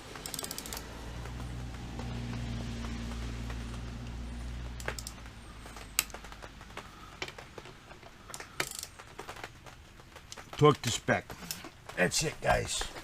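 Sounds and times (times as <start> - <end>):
metallic clicks of hand tools: 0.2 - 0.9, 4.8 - 5.2, 8.3 - 8.9.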